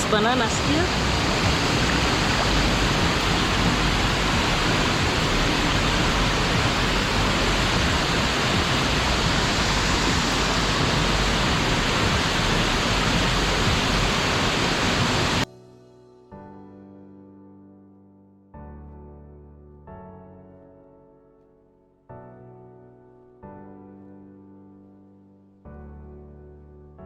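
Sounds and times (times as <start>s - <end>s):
waterfall and river roaring: 0.0s - 15.4s.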